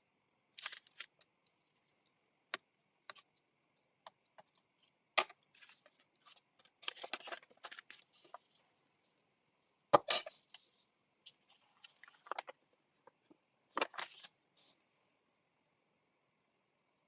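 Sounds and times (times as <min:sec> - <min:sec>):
paper rustling and scraping: 0:05.5 - 0:08.6, 0:10.5 - 0:12.6, 0:13.8 - 0:14.7.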